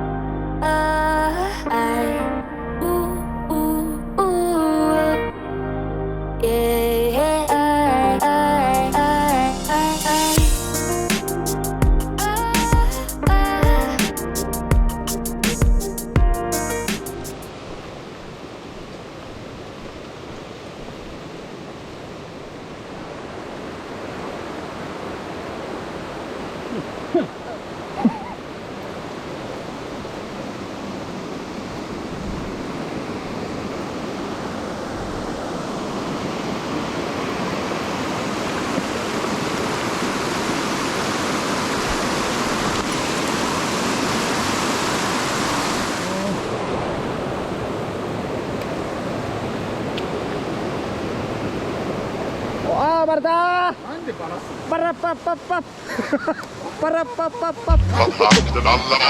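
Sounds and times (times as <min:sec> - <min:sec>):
mountain stream rushing: 0:16.9 - 0:59.0.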